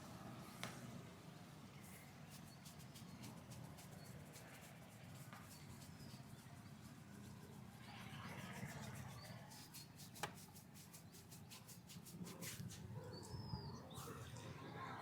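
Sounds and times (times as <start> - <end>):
hands rubbing and patting hair: 1.8 - 12.9.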